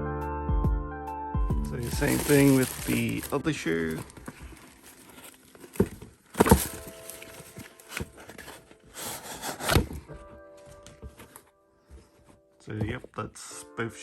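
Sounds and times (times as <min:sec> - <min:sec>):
sneaker rubbing and scuffing: 0:01.7 - 0:10.4.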